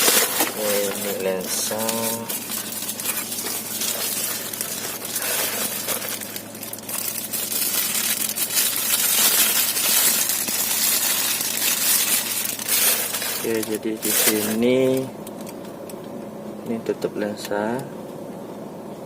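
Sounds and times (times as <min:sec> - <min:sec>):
packaging rustling and crackling: 0:00.0 - 0:16.0.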